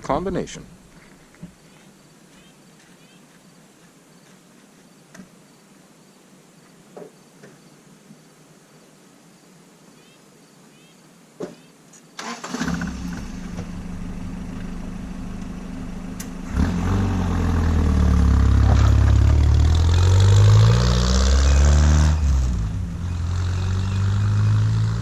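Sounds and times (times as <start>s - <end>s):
engine starting and running: 12.2s - 25.0s.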